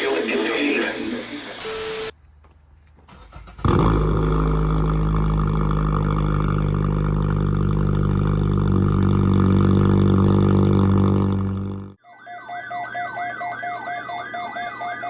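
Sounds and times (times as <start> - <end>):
electronic alert tone drone: 11.4 - 15.0.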